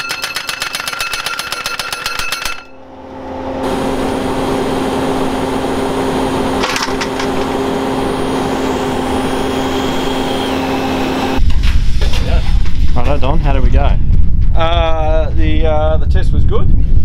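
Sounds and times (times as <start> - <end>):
skid steer engine humming: 2.5 - 11.4.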